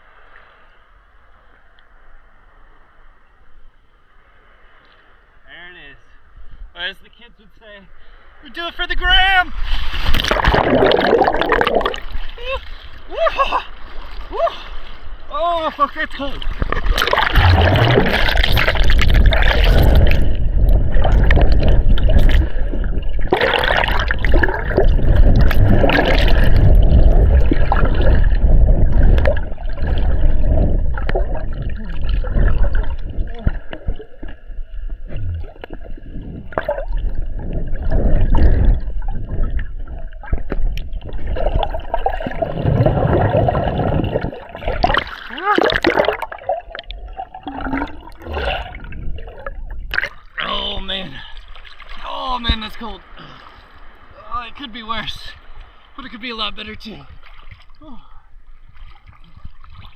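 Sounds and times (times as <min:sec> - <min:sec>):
water splashes: 0:09.0 - 0:59.9
low rumble: 0:16.9 - 0:44.8, 0:46.8 - 0:50.0.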